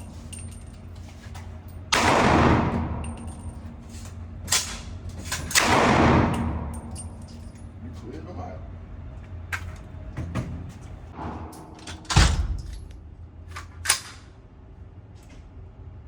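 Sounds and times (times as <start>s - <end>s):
loud gunshots with echo: 1.9s - 3.0s, 5.6s - 6.7s.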